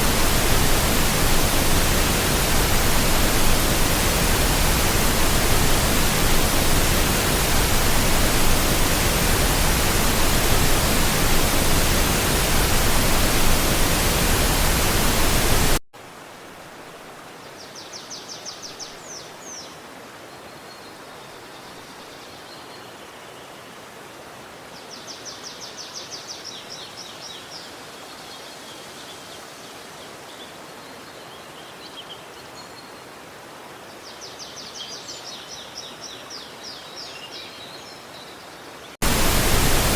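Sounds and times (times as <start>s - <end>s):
steady water hiss: 0.0s - 17.4s, 38.9s - 39.9s
loud rush of water: 0.0s - 17.6s, 38.9s - 39.9s.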